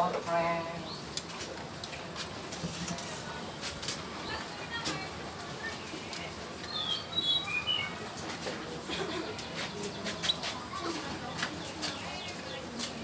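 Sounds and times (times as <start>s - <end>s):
canary chirping: 6.7s - 7.9s.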